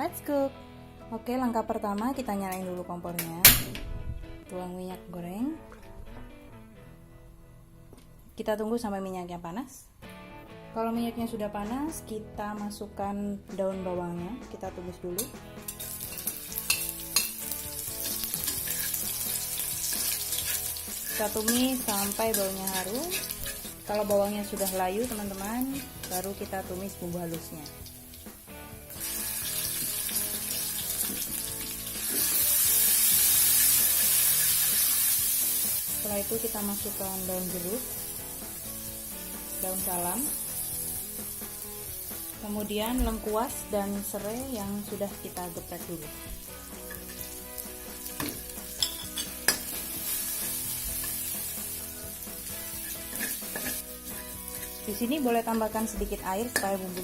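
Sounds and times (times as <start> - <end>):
food sizzling in hot oil: 15.6 - 57.0.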